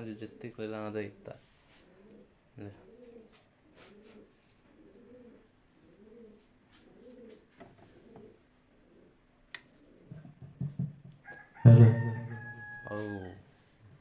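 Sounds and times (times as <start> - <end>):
bird cooing softly: 0.0 - 0.6, 1.2 - 10.7.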